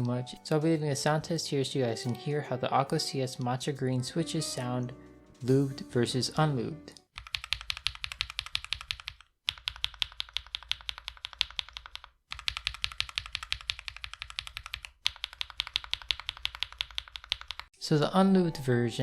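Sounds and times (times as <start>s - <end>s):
rapid mechanical keyboard typing: 7.2s - 17.7s.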